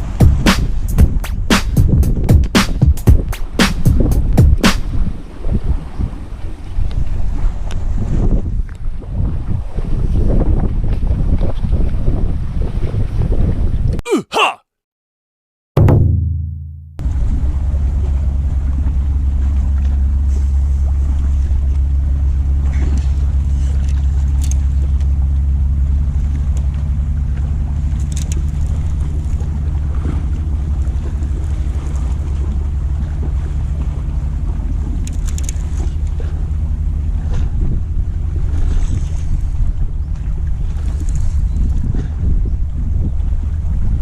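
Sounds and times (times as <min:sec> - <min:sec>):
boat engine droning: 0:17.0 - 0:44.0
faint clicks: 0:35.0 - 0:36.2.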